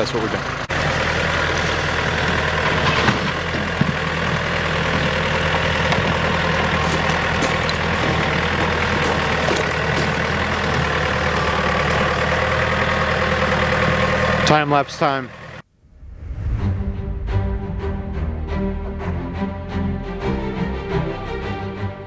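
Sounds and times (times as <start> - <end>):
tractor engine idling: 0.0 - 15.6.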